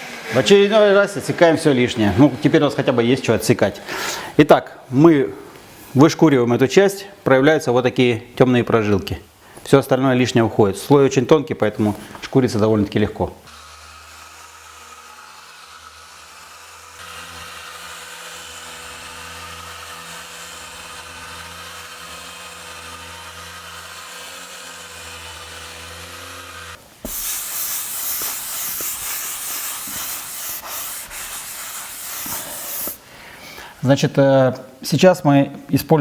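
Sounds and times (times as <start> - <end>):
soft hiss: 2.2 - 25.6, 26.4 - 35.8
abrasive rubbing over plaster: 13.5 - 33.0
machine hum: 13.5 - 33.0.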